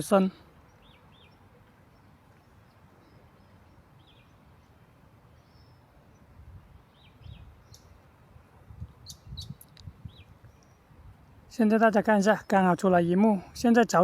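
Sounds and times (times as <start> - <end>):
high bird chirps: 9.0 - 10.9.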